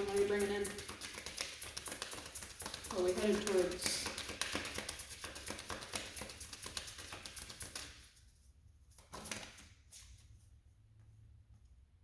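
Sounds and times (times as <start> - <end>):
cards being shuffled: 0.0 - 8.2, 9.0 - 10.2.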